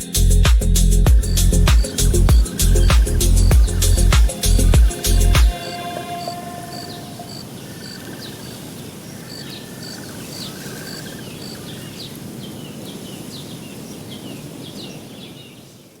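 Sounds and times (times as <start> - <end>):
songbirds chirping and trilling: 0.0 - 16.0
low rushing background noise: 0.9 - 9.2.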